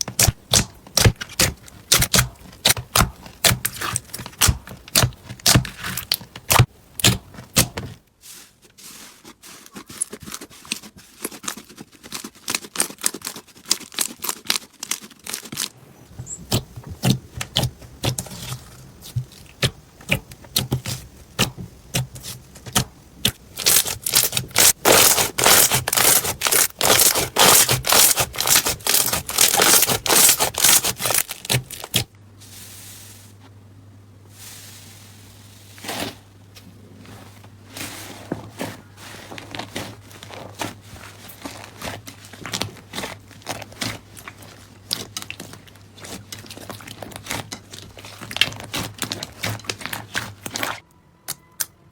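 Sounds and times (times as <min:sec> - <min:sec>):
slime squeezed popping and crackling: 0:22.2 - 0:32.0.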